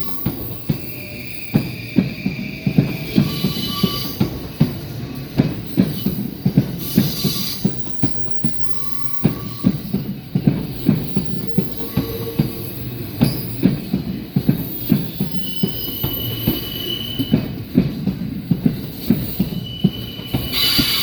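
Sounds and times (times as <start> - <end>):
high wheel squeal: 0.0 - 4.4, 14.7 - 17.5, 19.0 - 21.0
train wheels clacking over rail joints: 0.0 - 21.0.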